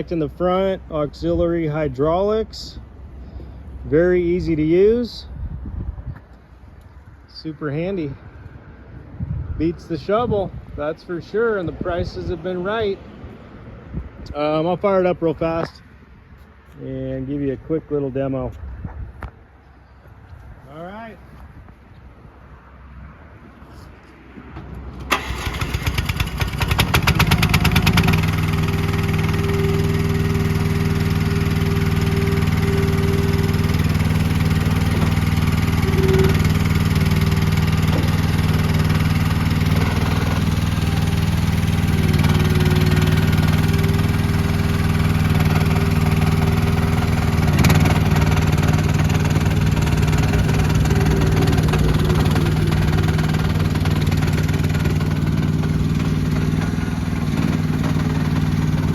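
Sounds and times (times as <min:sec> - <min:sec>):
engine starting and running: 0:24.6 - 0:58.9.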